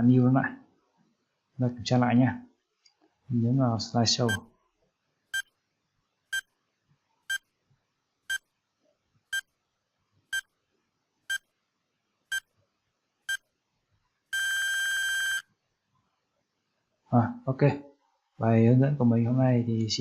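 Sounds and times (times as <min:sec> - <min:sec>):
short electronic beeps: 0:14.3 - 0:15.4.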